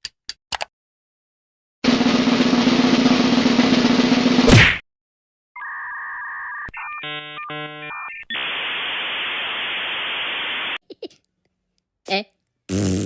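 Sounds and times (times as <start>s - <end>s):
two-note electronic tone: 5.6s - 8.2s
electronic beeps: 5.6s - 8.7s
static hiss: 8.3s - 10.8s.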